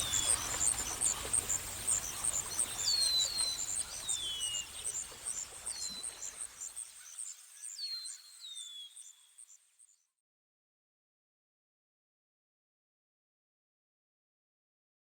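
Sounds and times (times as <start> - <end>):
birds chirping and whistling: 0.0 - 6.4.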